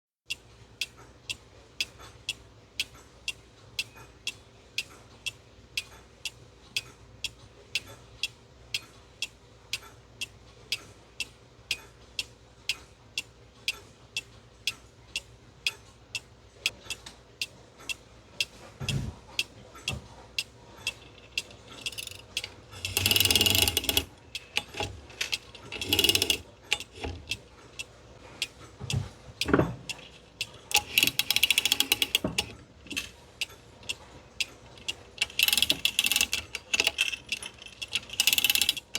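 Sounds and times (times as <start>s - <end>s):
clock ticking: 0.3s - 38.9s
whirring rattling gearwork: 20.9s - 27.4s, 35.2s - 38.9s.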